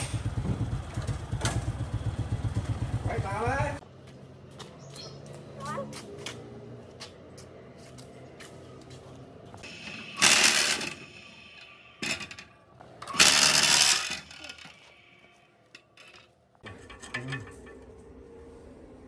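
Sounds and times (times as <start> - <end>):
metal parts clinking and rattling: 12.0 - 14.8, 15.6 - 17.5.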